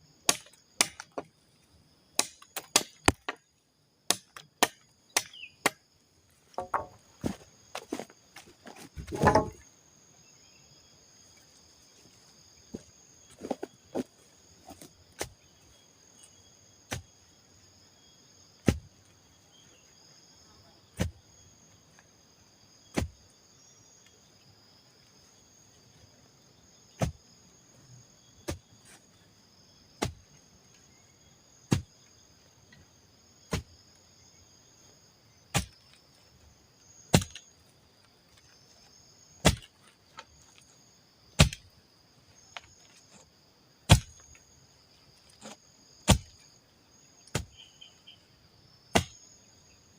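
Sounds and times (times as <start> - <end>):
insect drone: 0.0 - 49.9
chopping strikes on wood: 0.2 - 1.3, 2.2 - 3.4, 4.1 - 5.8, 6.6 - 8.0, 9.0 - 9.6, 14.8 - 15.4, 16.9 - 17.1, 18.6 - 18.9, 21.0 - 21.2, 22.9 - 23.2, 27.0 - 27.2, 28.4 - 28.7, 30.0 - 30.3, 31.7 - 31.9, 33.5 - 33.7, 35.5 - 35.9, 37.1 - 37.5, 39.4 - 39.7, 41.4 - 41.7, 43.9 - 44.2, 45.4 - 46.4, 47.2 - 47.6, 48.9 - 49.3.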